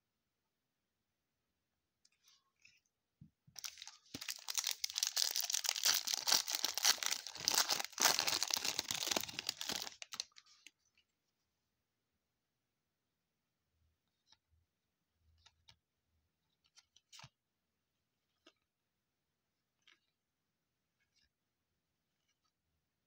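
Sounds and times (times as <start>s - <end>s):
wrapper tearing and crinkling: 3.6s - 10.4s.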